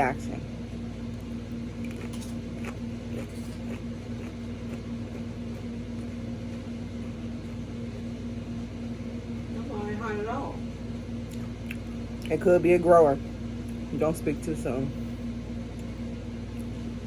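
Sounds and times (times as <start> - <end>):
low mechanical hum: 0.0 - 17.0
potato chip crunching: 1.1 - 6.7.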